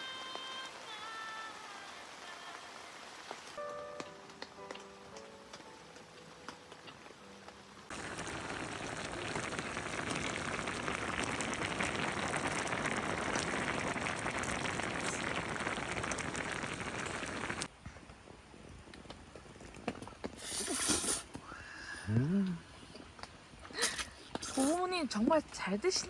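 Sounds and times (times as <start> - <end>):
heavy rain pattering: 0.0 - 17.7.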